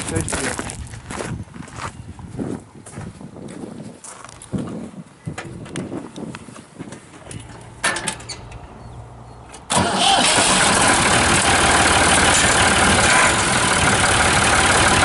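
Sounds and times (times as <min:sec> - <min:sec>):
diesel tractor engine running: 0:07.2 - 0:15.0.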